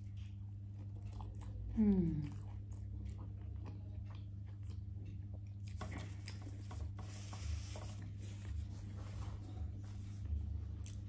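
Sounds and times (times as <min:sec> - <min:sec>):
person chewing with mouth smacks: 0:00.0 - 0:07.0, 0:10.7 - 0:11.0
steady low hum: 0:00.0 - 0:11.0.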